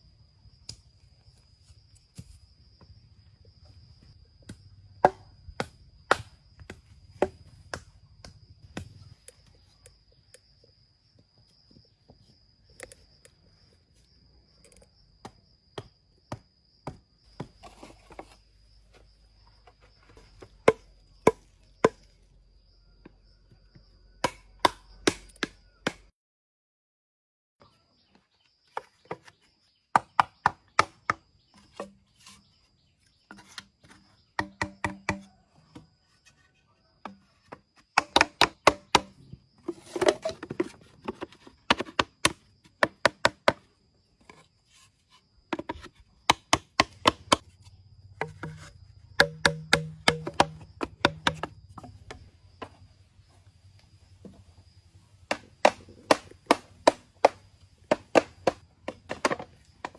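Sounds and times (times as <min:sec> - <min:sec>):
rapid chopping strikes: 0:48.2 - 0:51.5.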